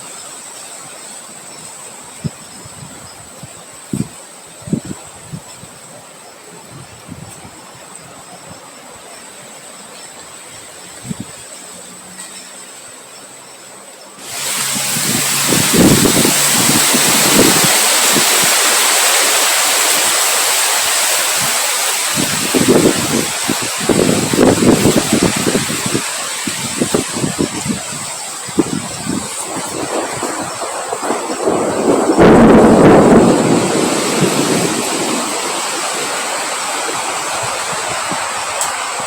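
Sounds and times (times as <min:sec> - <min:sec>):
wind gusts buffeting microphone: 0:01.6 - 0:08.6, 0:14.2 - 0:39.0
strong wind blowing: 0:14.2 - 0:39.0.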